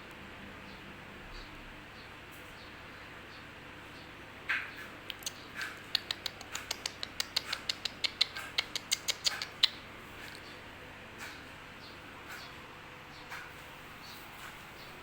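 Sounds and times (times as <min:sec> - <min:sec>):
kittens squeaking and mewing: 0:04.8 - 0:10.6.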